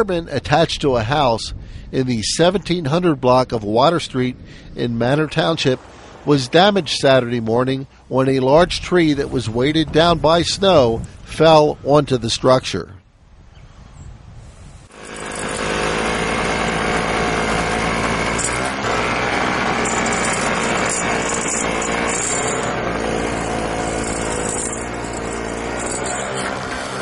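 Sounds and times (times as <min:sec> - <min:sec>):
small engine running: 0:14.9 - 0:27.0.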